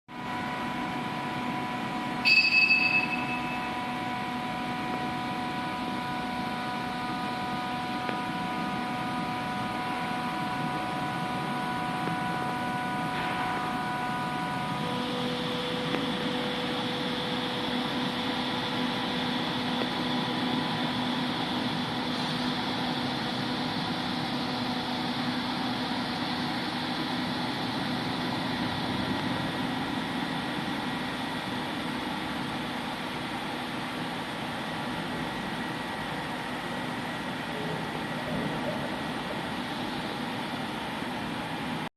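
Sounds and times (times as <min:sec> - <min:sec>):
motor whine: 0:00.2 - 0:41.3.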